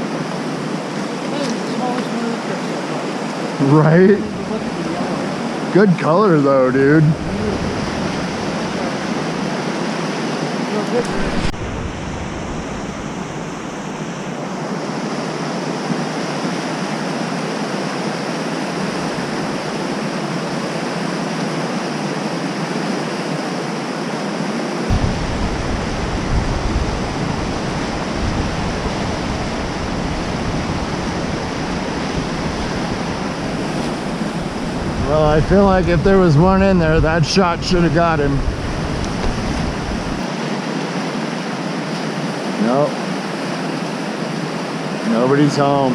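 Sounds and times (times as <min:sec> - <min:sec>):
low rumble: 0:11.0 - 0:14.4, 0:24.9 - 0:31.5.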